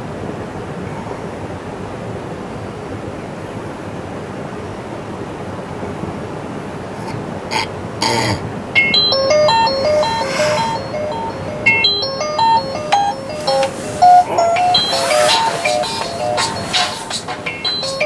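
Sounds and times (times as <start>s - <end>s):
chiming melody: 8.8s - 18.0s
swishes of noise: 9.2s - 18.0s.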